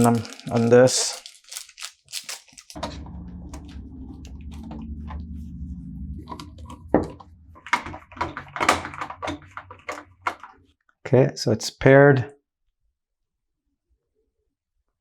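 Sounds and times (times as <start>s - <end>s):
sharp clicks and knocks: 2.8s - 10.7s.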